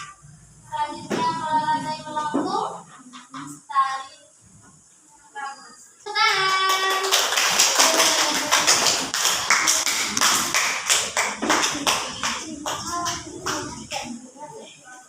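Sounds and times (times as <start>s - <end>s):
group clapping: 6.2s - 14.2s.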